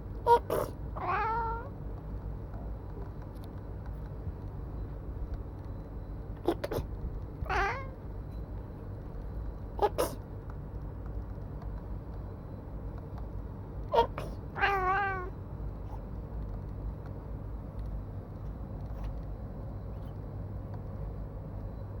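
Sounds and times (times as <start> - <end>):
cat meowing: 0.3 - 1.7, 7.4 - 8.0, 13.9 - 15.4.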